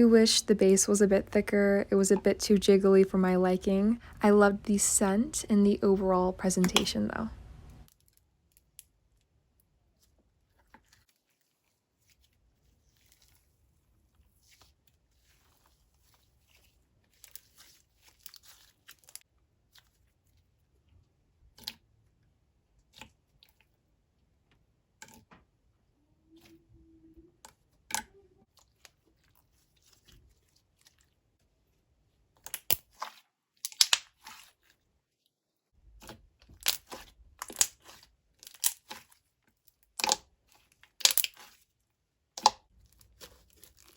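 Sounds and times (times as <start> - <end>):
slime sticky pops and crackles: 32.4 - 34.4, 36.0 - 39.1, 40.0 - 40.3, 40.9 - 41.6.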